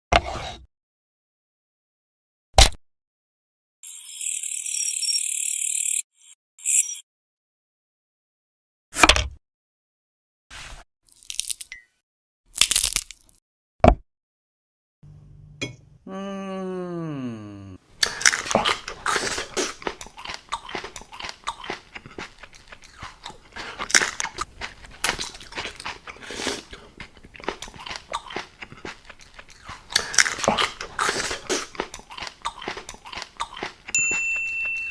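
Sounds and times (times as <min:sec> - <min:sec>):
crunching of shell: 0:11.1 - 0:11.7, 0:12.5 - 0:13.4, 0:18.0 - 0:33.8
wet chewing: 0:18.0 - 0:33.9.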